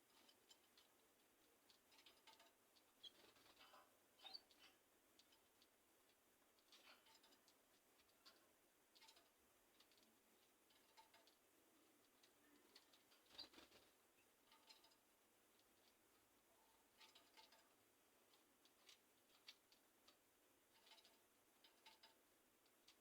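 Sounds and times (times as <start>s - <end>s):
faint clicks and ticks: 0.0s - 23.0s
canary chirps: 1.6s - 5.8s, 8.0s - 15.0s.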